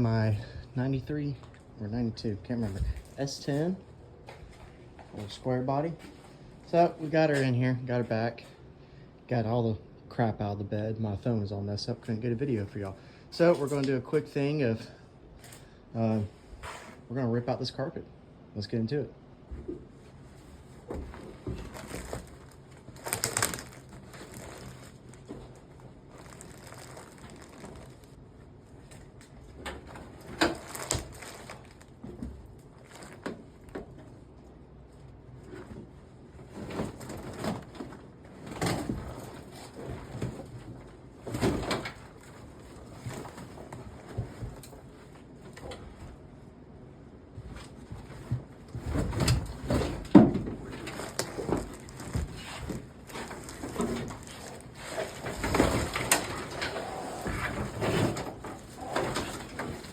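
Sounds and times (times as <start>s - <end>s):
rustling: 19.9s - 46.3s, 47.3s - 59.9s
carpet ripping: 21.7s - 28.2s, 30.4s - 32.0s.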